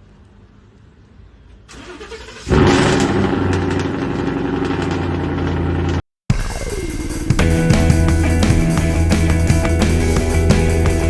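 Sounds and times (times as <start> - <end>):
vehicle engine starting and running: 1.7 - 11.0.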